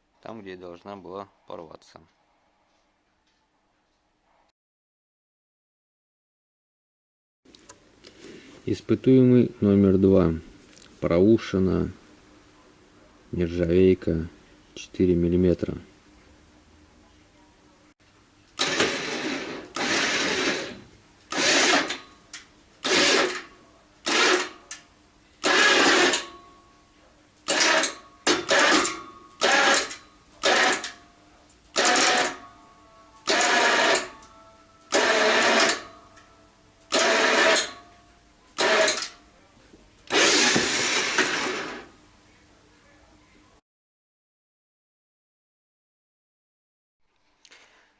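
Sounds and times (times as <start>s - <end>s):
winch hauling in bursts: 18.6s - 22.0s, 25.4s - 26.2s, 34.9s - 35.8s, 36.9s - 37.7s, 40.1s - 41.8s.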